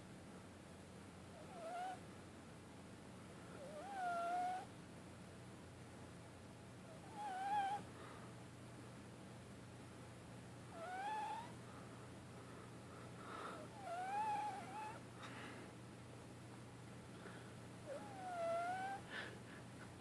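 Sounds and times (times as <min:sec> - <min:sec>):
kitten high wavering calls: 0:01.4 - 0:02.0, 0:03.6 - 0:04.7, 0:07.0 - 0:07.8, 0:10.7 - 0:11.6, 0:13.8 - 0:15.0, 0:17.9 - 0:19.0.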